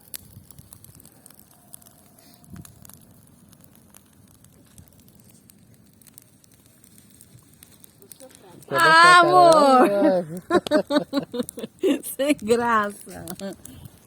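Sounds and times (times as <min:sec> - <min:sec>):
campfire crackling and popping: 0:00.0 - 0:14.0.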